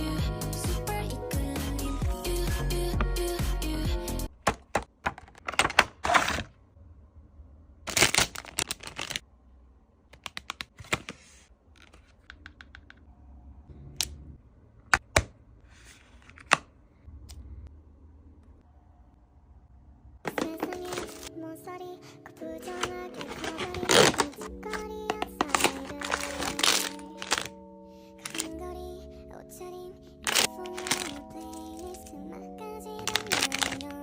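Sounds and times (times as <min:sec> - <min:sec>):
packaging rustling and crinkling: 0:07.9 - 0:09.2, 0:20.3 - 0:21.3, 0:22.6 - 0:27.6, 0:28.2 - 0:28.5, 0:30.2 - 0:32.0, 0:33.0 - 0:34.0
sharp clicks and taps: 0:12.2 - 0:13.1.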